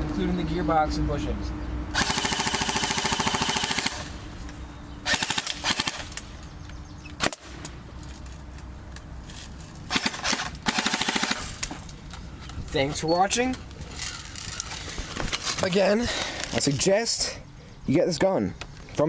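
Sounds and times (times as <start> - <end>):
airsoft gun firing bursts: 2.0 - 4.2, 5.0 - 6.2, 9.9 - 11.6.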